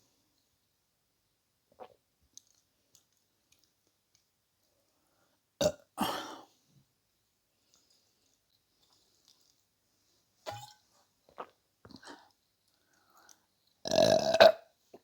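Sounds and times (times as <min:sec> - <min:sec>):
person burping loudly: 0:05.6 - 0:06.3, 0:13.8 - 0:14.7.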